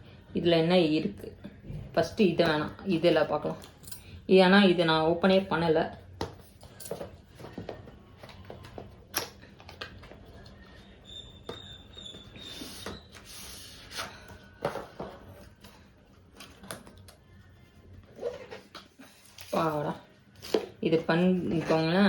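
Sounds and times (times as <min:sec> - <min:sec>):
thin squeak: 0:10.6 - 0:14.3.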